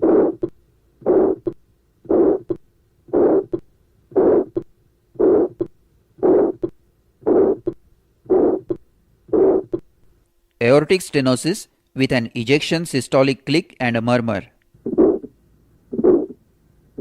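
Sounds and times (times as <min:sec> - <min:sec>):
harsh systolic heart murmur: 0:00.0 - 0:09.9, 0:14.8 - 0:16.4.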